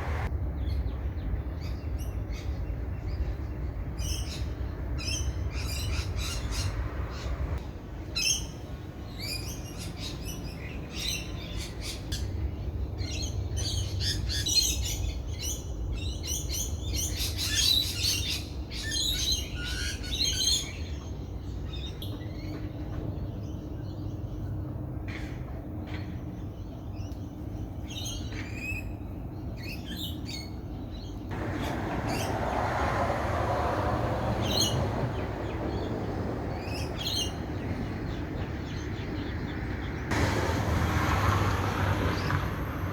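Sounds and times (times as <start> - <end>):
broad rushing noise: 0.0 - 0.3, 31.3 - 37.9, 40.0 - 42.9
birds chirping: 0.0 - 42.9.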